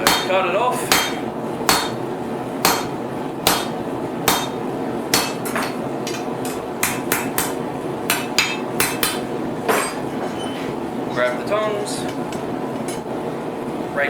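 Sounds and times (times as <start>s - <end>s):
hammer striking steel on anvil: 0.0s - 2.0s, 2.6s - 10.1s.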